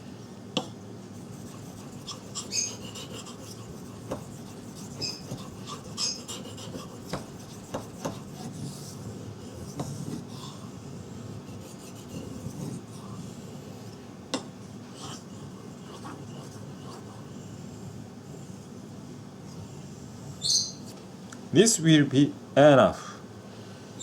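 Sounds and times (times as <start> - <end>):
knife scraping on whetstone: 1.2 - 10.3.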